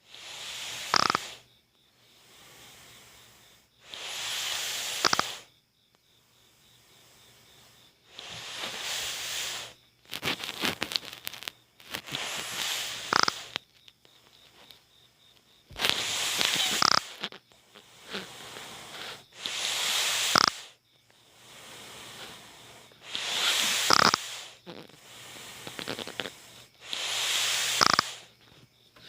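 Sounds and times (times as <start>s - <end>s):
child snoring loudly: 0.0s - 1.4s, 2.2s - 5.5s, 8.1s - 9.8s, 12.0s - 13.6s, 15.8s - 28.3s
quiet breaths: 0.0s - 29.0s.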